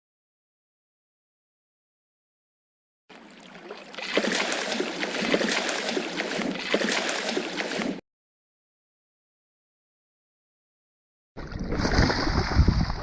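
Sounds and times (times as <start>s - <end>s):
fish splashing in water: 3.1s - 8.0s, 11.4s - 13.0s.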